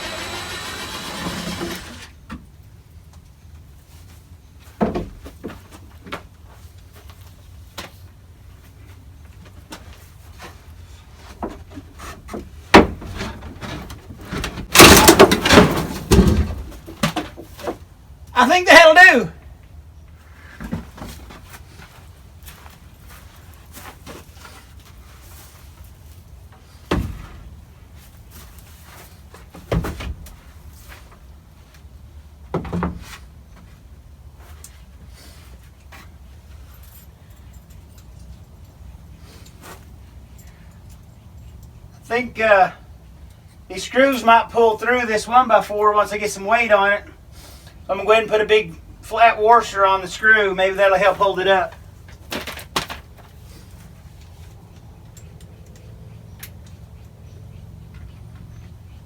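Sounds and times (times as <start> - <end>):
crate scraping into place: 0.0 - 2.2, 12.8 - 17.0
plastic crates knocking on wood: 12.3 - 17.8.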